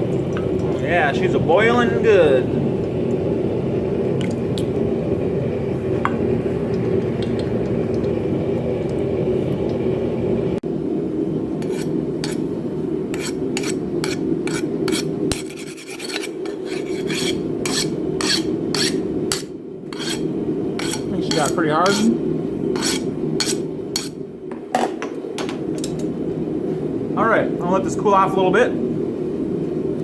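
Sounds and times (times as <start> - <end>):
steady low rushing noise: 0.6 - 11.4
file scraping on hardened steel: 11.6 - 12.5, 13.1 - 22.1, 22.7 - 24.2.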